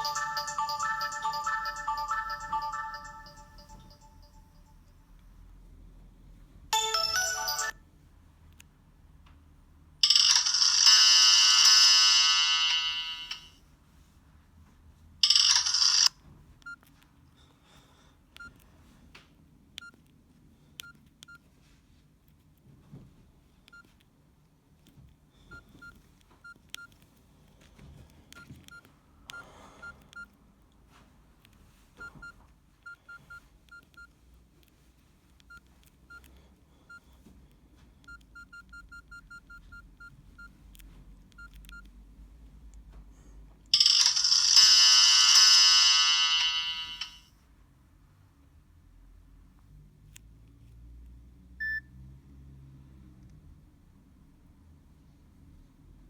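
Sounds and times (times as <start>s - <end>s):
phone keypad beeps: 0.0s - 4.7s, 15.2s - 16.9s, 51.6s - 51.9s.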